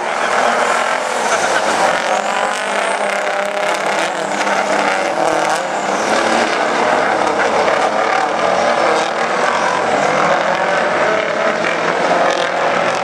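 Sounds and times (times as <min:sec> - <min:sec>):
truck engines droning: 0:00.0 - 0:13.0.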